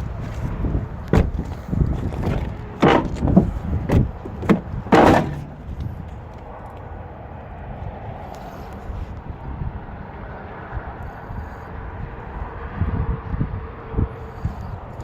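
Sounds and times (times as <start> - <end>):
car doors clunking shut: 1.0 - 6.2.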